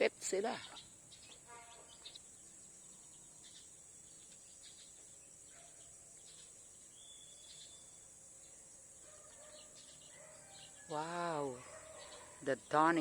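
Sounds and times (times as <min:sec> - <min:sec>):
bird chirps: 0:00.4 - 0:08.0.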